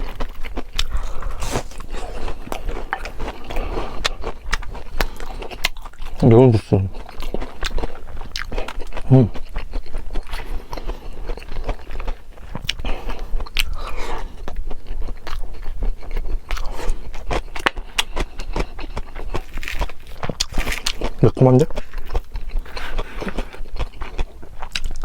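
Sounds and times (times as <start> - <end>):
noodles slurped and chewed: 0.0 - 25.0.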